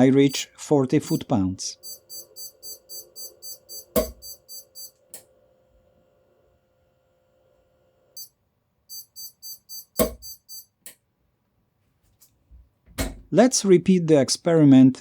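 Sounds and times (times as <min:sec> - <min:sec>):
rapid high beeps: 0:00.0 - 0:05.0, 0:08.9 - 0:10.8.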